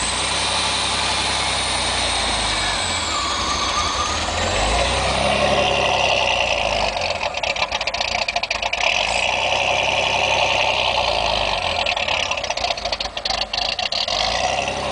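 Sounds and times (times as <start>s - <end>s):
car engine idling roughly: 0.0s - 14.9s.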